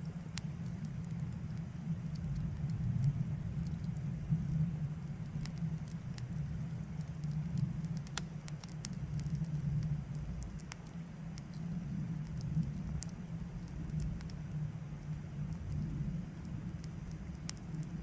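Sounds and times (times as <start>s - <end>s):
steady low rumble: 0.0s - 18.0s
wood fire crackling: 0.1s - 18.0s
sharp pops from burning log: 3.8s - 14.6s.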